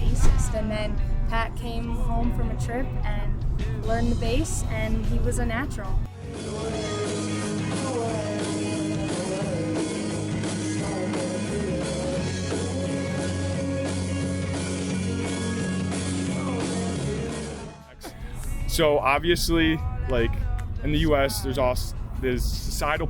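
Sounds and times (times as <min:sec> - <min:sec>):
person singing: 0:06.1 - 0:18.9
electric guitar: 0:06.2 - 0:18.6.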